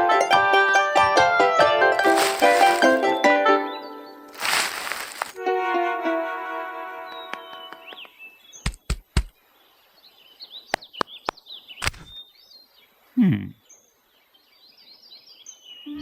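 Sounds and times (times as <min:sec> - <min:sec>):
birds chirping: 0:07.0 - 0:16.0
sharp knocks: 0:08.6 - 0:09.3.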